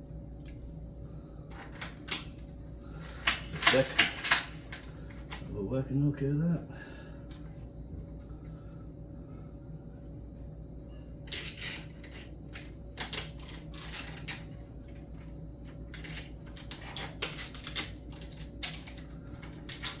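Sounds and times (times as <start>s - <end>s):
steady low hum: 0.0s - 20.0s
metal lock parts clicking: 15.9s - 20.0s.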